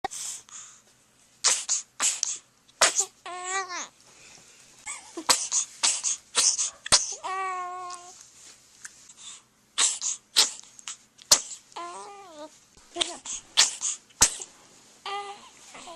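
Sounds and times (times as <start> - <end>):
baby sneezing: 1.4 - 3.2, 5.2 - 7.3, 9.8 - 11.6, 13.0 - 14.5
high-pitched baby vocal sounds: 1.4 - 4.0, 4.9 - 8.2, 9.8 - 15.9.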